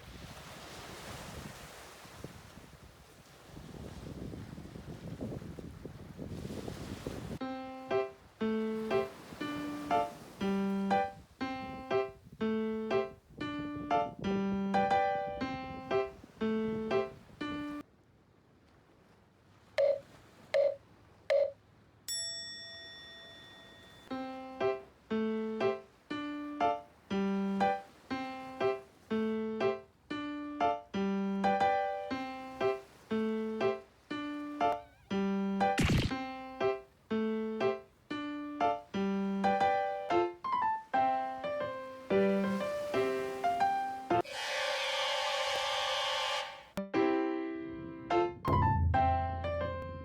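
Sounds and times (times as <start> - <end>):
keyboard melody with steady beat: 7.4 - 17.8, 24.1 - 42.0, 46.8 - 50.0
held ringing tone: 19.8 - 20.0, 20.6 - 24.2
short blips: 19.8 - 21.6, 34.6 - 36.6.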